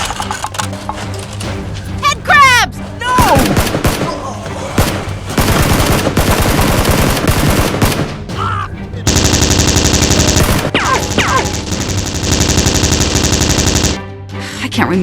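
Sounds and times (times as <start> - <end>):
machine-gun rattle: 0.0 - 1.4, 9.1 - 14.0
gunshots: 3.2 - 8.3, 9.1 - 14.0.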